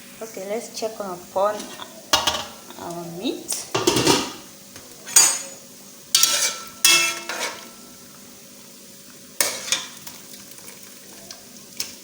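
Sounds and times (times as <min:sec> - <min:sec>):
metal pot clanking: 0:01.5 - 0:02.7, 0:03.7 - 0:04.4, 0:05.0 - 0:07.9, 0:09.4 - 0:10.0.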